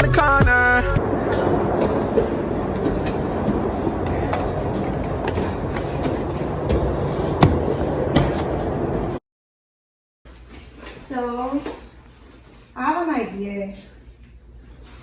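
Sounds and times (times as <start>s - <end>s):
sharp knocks: 1.3s - 8.5s.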